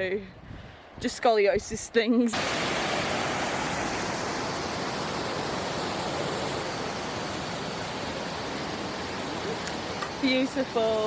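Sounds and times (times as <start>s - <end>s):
waterfall rushing roar: 2.4s - 11.0s.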